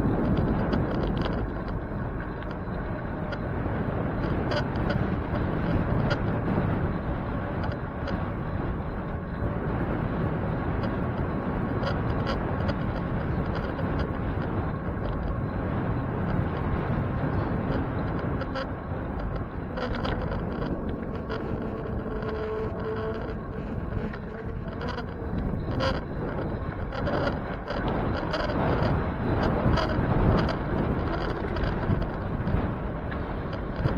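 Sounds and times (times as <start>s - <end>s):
light clicks and rattles: 0.0s - 3.4s, 10.6s - 33.9s
bicycle road noise: 0.0s - 33.9s
wind noise: 0.0s - 33.9s.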